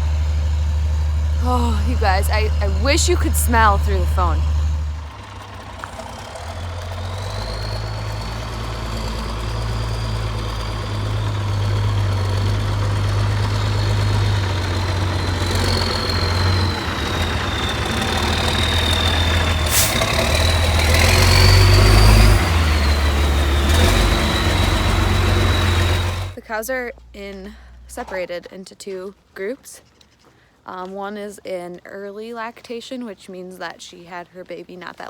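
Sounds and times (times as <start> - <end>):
heavy vehicle engine running: 0.0 - 26.4.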